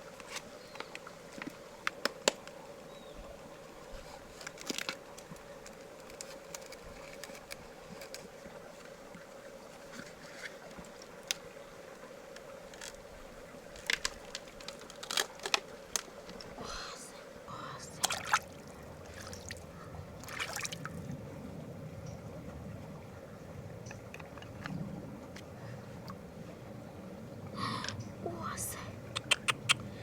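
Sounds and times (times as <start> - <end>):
faint hum: 15.9 - 30.0
sharp clicks and taps: 29.2 - 29.8.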